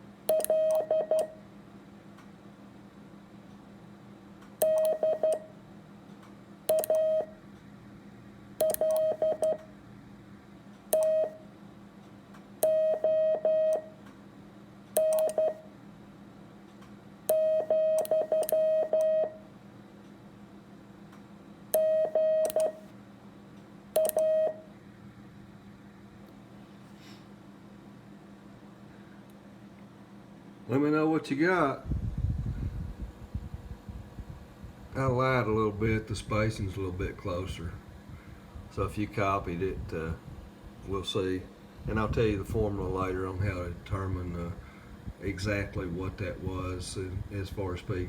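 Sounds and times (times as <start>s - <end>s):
faint steady hum: 0.0s - 48.0s
morse code beeps: 0.3s - 1.4s, 4.6s - 5.5s, 6.7s - 7.4s, 8.6s - 9.7s, 11.0s - 11.4s, 12.6s - 13.9s, 15.0s - 15.7s, 17.3s - 19.4s, 21.8s - 22.9s, 24.0s - 24.7s.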